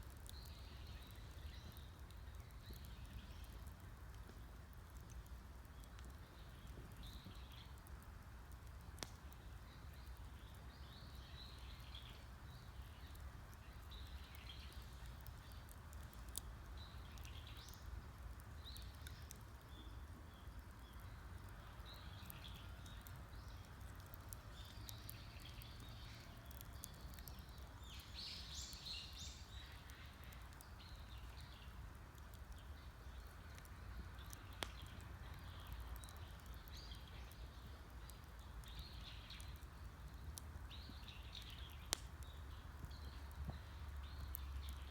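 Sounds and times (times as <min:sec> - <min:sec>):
campfire crackling and popping: 0:00.0 - 0:44.9
small birds chirping: 0:00.0 - 0:44.9.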